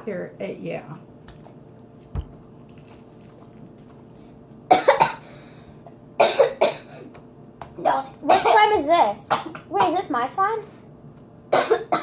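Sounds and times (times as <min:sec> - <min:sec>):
girl coughing: 0:04.7 - 0:05.3, 0:06.2 - 0:07.1, 0:07.8 - 0:10.1, 0:11.5 - 0:12.0.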